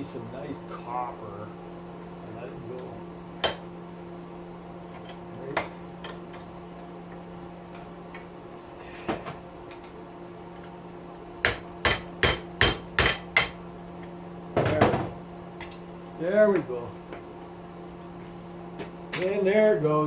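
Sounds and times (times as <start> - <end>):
steady low hum: 0.0 - 18.8
hammer striking metal: 3.4 - 3.6, 11.4 - 13.6.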